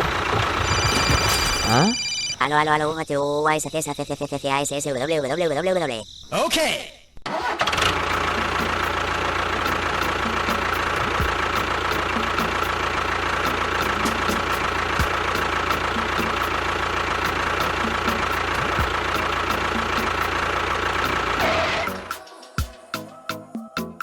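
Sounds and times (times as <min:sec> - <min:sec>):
small motor running: 0:00.0 - 0:02.4.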